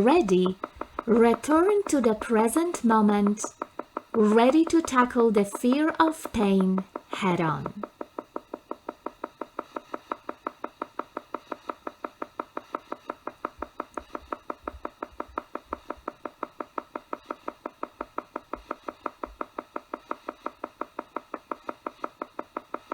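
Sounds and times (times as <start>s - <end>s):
rhythmic pulsing tone: 0.0s - 9.6s.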